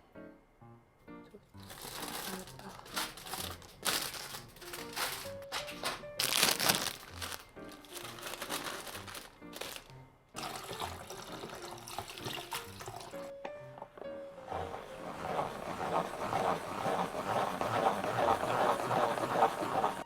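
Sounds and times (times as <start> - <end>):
rustling: 1.6 - 9.9
splashing: 6.3 - 13.3, 14.4 - 20.0.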